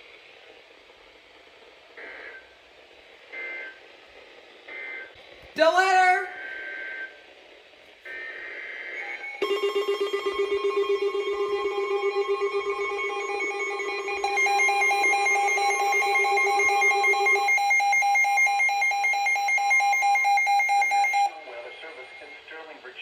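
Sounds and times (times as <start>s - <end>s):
rapid pulsing alarm beeps: 8.1s - 22.6s
warbling data burst: 9.4s - 22.4s
steady attention tone: 9.4s - 22.5s.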